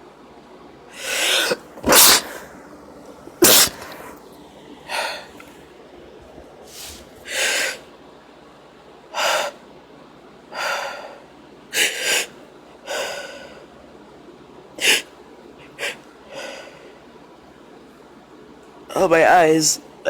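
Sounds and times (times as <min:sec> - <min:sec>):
woman gasping and sneezing: 0:01.0 - 0:02.5, 0:03.4 - 0:04.2.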